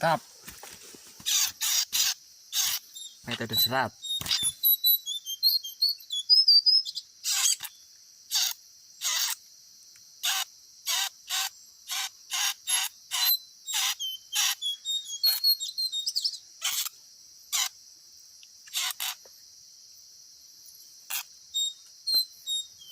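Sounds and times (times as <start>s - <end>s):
high insect buzz: 0.0s - 22.9s
bird chirps: 1.2s - 9.4s, 10.2s - 17.8s, 20.8s - 22.9s.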